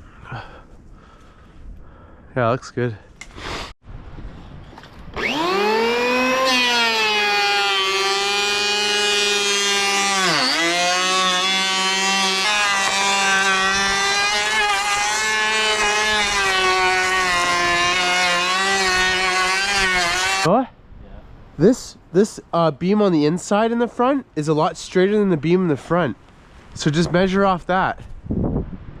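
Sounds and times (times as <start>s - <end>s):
power tool motor whining: 5.1s - 20.5s.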